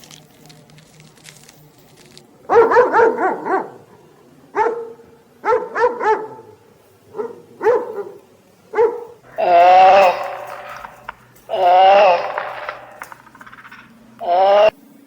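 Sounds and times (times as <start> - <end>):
wolf yipping barks: 2.4 - 13.6.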